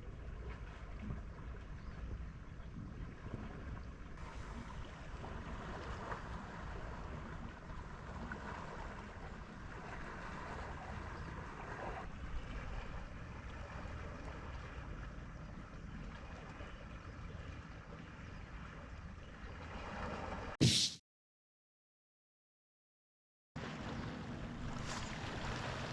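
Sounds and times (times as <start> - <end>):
wind rumbling on microphone: 0.0 - 15.6.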